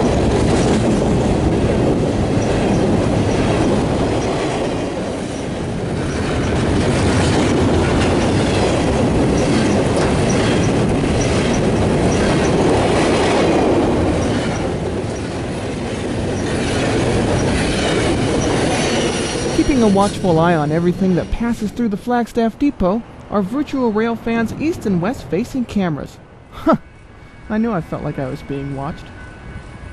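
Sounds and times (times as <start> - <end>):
train wheels clicking over rail joints: 0.0 - 20.6
freight train rumbling past: 0.0 - 29.9.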